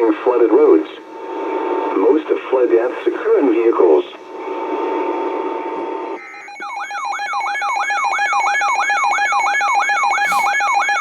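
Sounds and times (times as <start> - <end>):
emergency alert siren wail: 6.2 - 11.0
steady alert tone: 10.2 - 10.6
short beep: 10.2 - 10.7.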